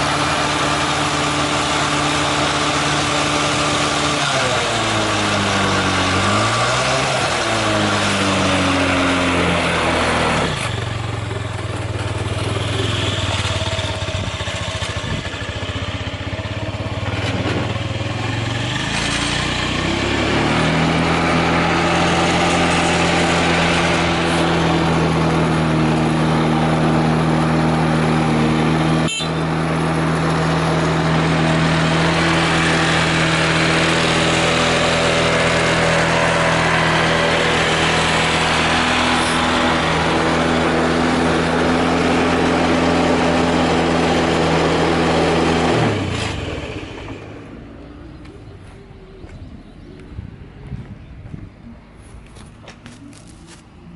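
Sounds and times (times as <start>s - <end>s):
scooter engine revving and idling: 0.0s - 51.1s.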